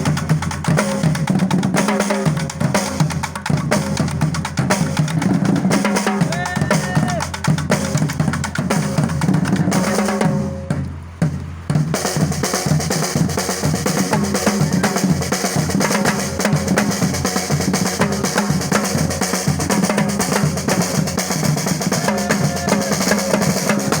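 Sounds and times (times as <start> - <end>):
music with drum beat and melody: 0.0 - 24.0.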